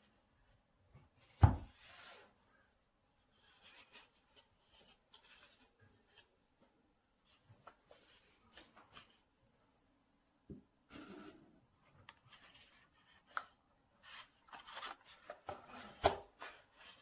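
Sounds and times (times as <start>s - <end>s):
sliding rustle of packaging: 12.3s - 17.0s.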